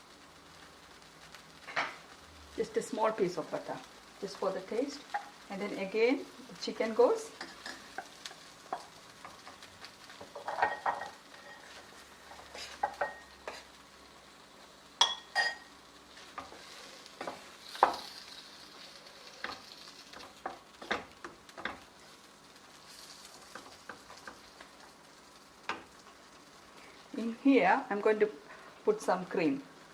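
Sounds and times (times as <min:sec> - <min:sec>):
light sizzle: 0:00.0 - 0:29.9
utensil scraping a frying pan: 0:07.4 - 0:13.8, 0:15.3 - 0:25.0.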